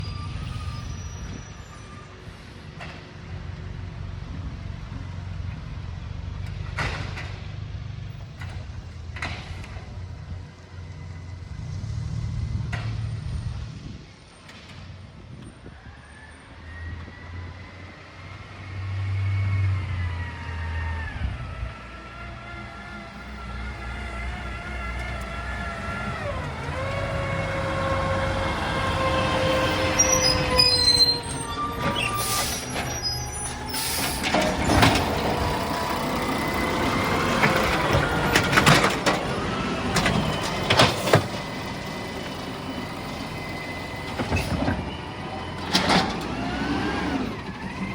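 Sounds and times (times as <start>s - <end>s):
garbage truck running: 0.0s - 15.4s, 16.7s - 47.9s
diesel engine rumbling: 0.0s - 47.9s
whining tone: 18.9s - 47.9s.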